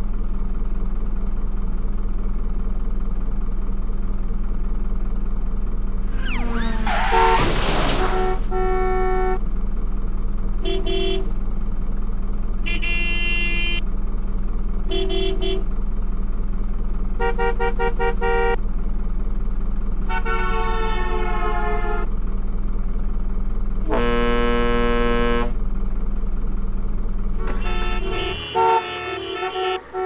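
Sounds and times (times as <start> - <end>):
steady low hum: 0.0 - 30.0
horn honks: 6.1 - 9.4, 10.6 - 11.4, 12.6 - 13.8, 14.8 - 15.7, 17.2 - 18.6, 20.0 - 22.1, 23.8 - 25.6, 27.4 - 30.0.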